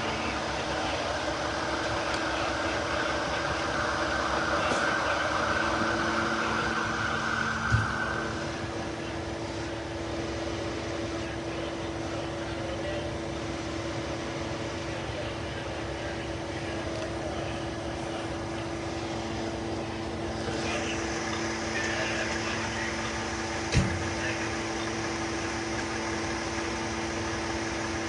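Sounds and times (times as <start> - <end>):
vehicle engine humming: 0.0 - 28.0.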